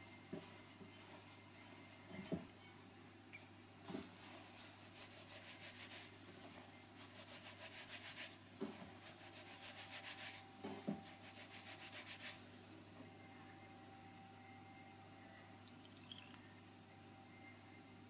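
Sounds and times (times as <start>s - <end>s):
rubbing flour and butter in bowl: 4.3s - 10.4s.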